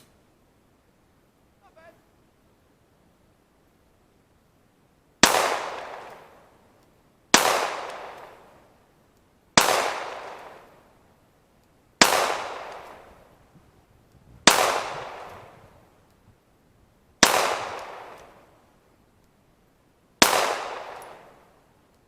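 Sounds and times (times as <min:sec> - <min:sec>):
pistol shots with echo: 0:05.2 - 0:06.4, 0:07.3 - 0:08.5, 0:09.6 - 0:10.7, 0:12.0 - 0:13.1, 0:14.5 - 0:15.6, 0:17.2 - 0:18.4, 0:20.2 - 0:21.4.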